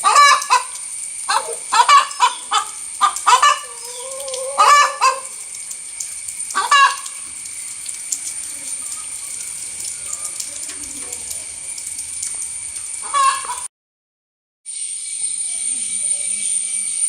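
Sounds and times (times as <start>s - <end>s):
hen squawking: 0.0s - 5.6s, 6.5s - 7.2s, 13.0s - 13.7s.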